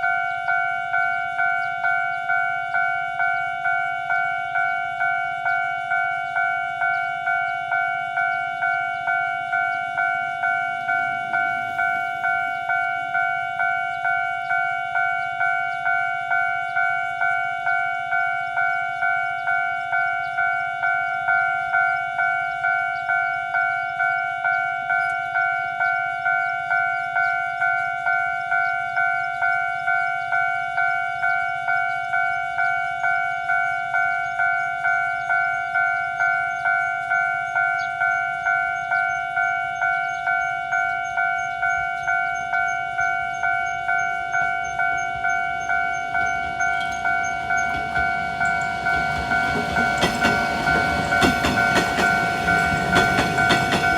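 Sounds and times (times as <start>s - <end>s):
level crossing warning bell ringing: 0.0s - 53.9s.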